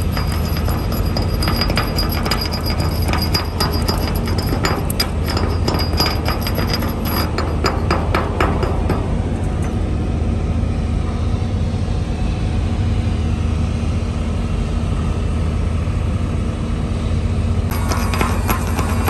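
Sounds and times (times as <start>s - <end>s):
welding machine low hum: 0.0s - 10.2s, 17.7s - 19.0s.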